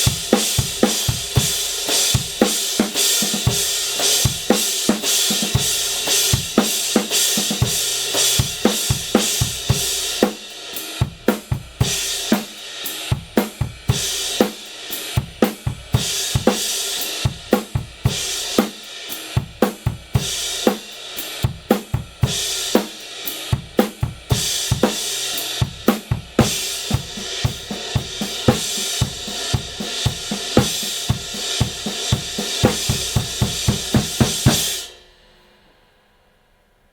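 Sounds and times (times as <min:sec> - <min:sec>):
drum kit groove: 0:00.0 - 0:35.2
crash cymbal washing: 0:26.4 - 0:36.0.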